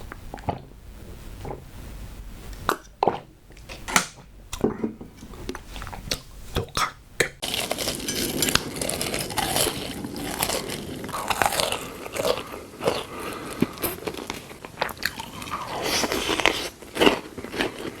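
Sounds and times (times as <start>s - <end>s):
chewing: 5.2s - 18.0s
crunching hard chocolate: 7.4s - 18.0s.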